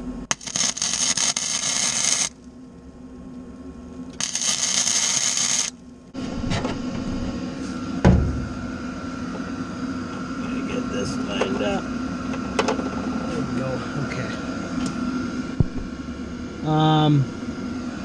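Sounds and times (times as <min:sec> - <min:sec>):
welder arc crackling: 0:00.2 - 0:02.7, 0:04.1 - 0:05.8
thump: 0:08.0 - 0:08.5, 0:15.6 - 0:15.9.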